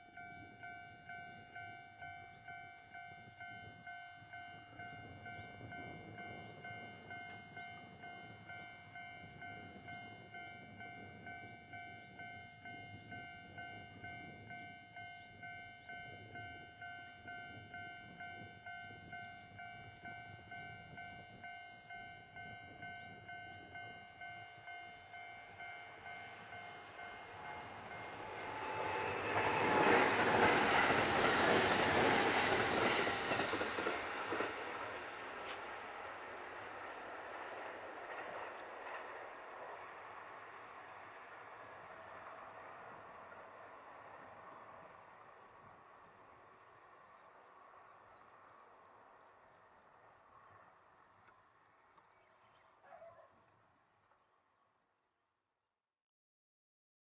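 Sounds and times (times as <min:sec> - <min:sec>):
level-crossing bell ringing: 0:00.0 - 0:31.5
train running noise: 0:00.0 - 0:51.4.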